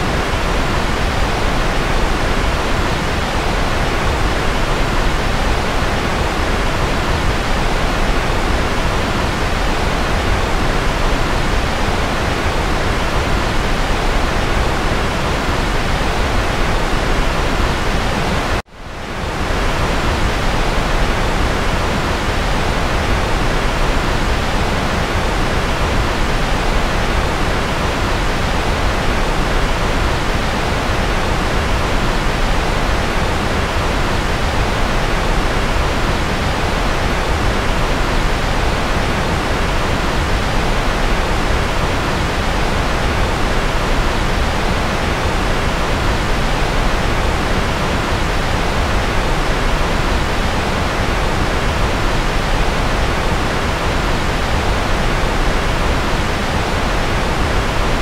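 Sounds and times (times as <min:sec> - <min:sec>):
white noise hiss: 0:00.0 - 0:58.0.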